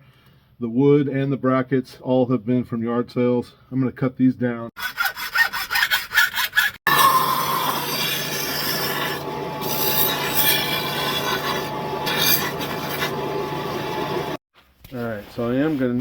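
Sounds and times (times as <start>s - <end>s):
power saw cutting wood: 6.6s - 14.4s.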